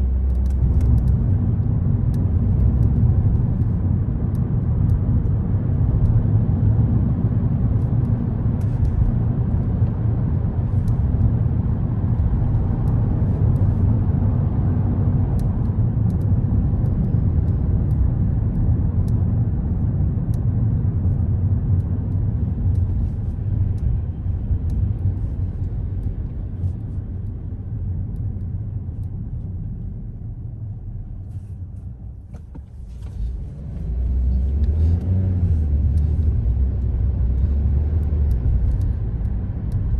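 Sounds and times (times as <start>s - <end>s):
car road and engine rumble: 0.0s - 39.9s
faint clicks: 35.8s - 39.9s.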